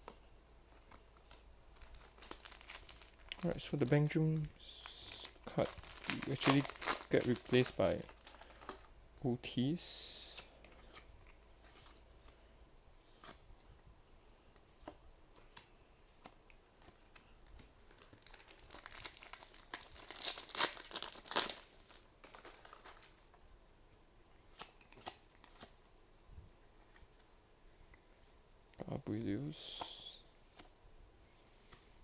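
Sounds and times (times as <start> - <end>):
foil wrapper tearing and crinkling: 1.8 - 4.2, 5.1 - 8.9, 17.9 - 23.2.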